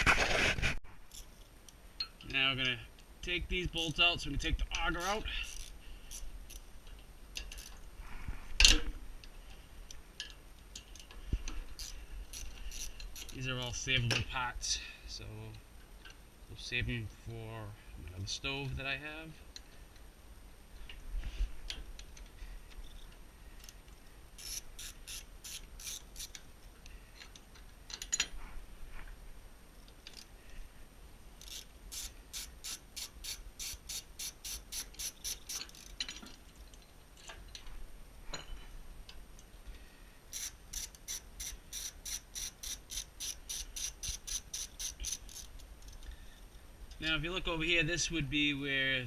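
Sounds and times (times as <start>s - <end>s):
ratchet wrench clicking: 4.9s - 6.7s, 11.8s - 13.4s, 24.4s - 26.5s, 31.4s - 36.0s, 40.3s - 46.0s.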